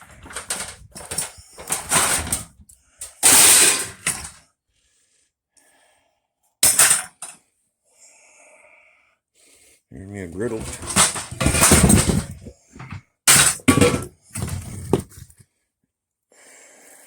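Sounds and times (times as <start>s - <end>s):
junk clattering and scraping: 0.0s - 4.4s, 10.4s - 15.4s.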